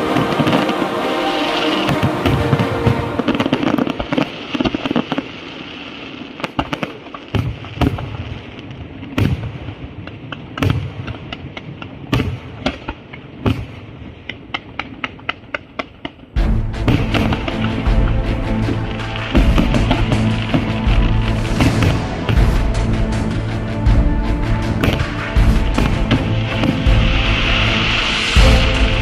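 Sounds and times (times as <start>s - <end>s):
fireworks bangs: 0.0s - 18.1s, 18.7s - 22.7s
small firework cracks: 3.4s - 16.3s.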